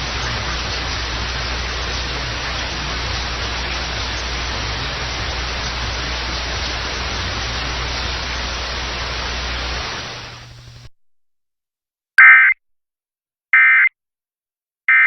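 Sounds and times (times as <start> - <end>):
low hum: 0.0 - 10.9
static hiss: 0.0 - 10.9.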